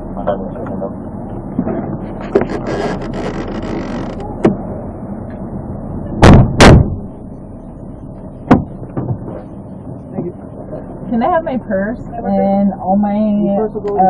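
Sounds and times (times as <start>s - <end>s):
car doors slamming: 6.2s - 7.1s, 8.5s - 9.3s.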